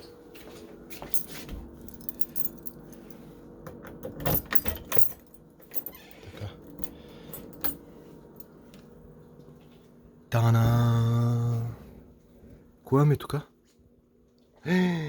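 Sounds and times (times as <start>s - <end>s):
low hum: 1.0s - 12.8s
metallic jingling and clicking: 1.1s - 3.2s, 4.0s - 7.8s.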